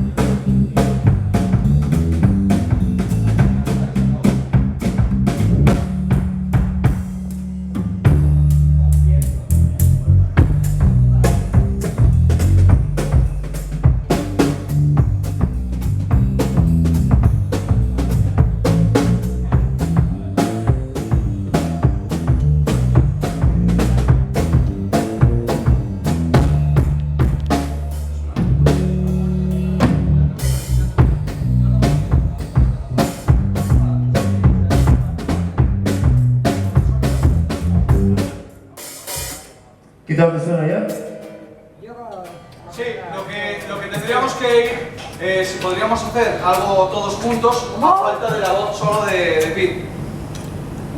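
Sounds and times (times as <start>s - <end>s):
bass guitar line: 0.0s - 38.4s
drum kit playing a beat: 0.0s - 39.7s, 43.2s - 49.7s.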